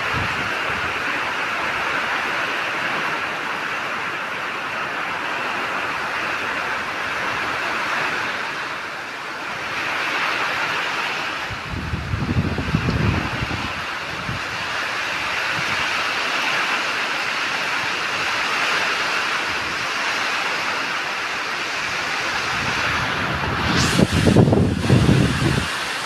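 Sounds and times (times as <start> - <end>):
heavy rain pouring: 0.0 - 26.0
low rumble: 22.4 - 25.9.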